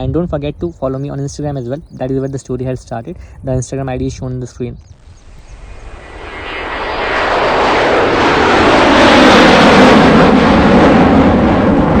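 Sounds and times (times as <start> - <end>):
airliner passing low overhead: 4.9 - 12.0.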